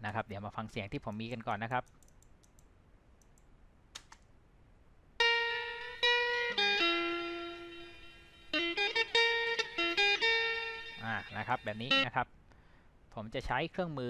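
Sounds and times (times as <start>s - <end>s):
guitar picking single notes: 5.2s - 12.1s.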